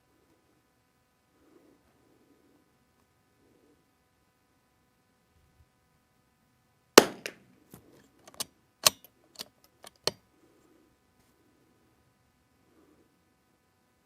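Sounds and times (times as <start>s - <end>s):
rifle shot: 7.0s - 7.4s
rifle bolt clicks: 8.2s - 10.2s.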